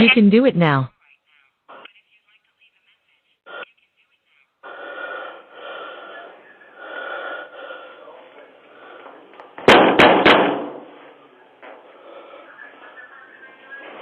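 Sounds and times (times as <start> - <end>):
muffled background noise: 0.0 - 14.0
sharp bangs: 9.5 - 11.0.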